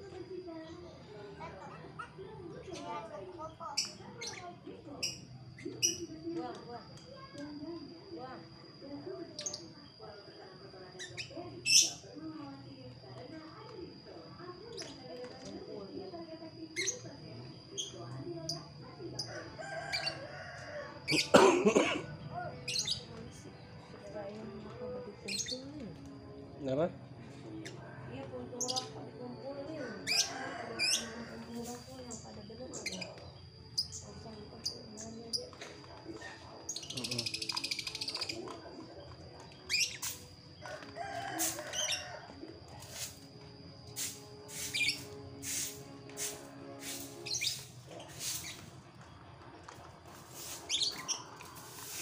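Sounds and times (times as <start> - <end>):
small birds chirping: 10.9 - 12.1, 24.4 - 26.0, 28.5 - 29.1, 29.9 - 42.2, 46.8 - 49.2, 50.1 - 52.0
rooster crowing: 19.2 - 21.4, 29.7 - 31.8, 40.6 - 42.4
bird chattering trill: 36.7 - 38.4.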